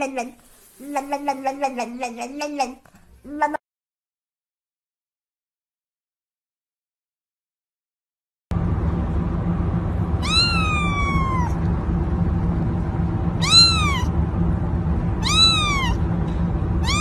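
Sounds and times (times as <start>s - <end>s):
low background hum: 8.5s - 17.0s
cat meowing: 10.2s - 11.6s, 13.4s - 14.1s, 15.2s - 16.0s, 16.8s - 17.0s.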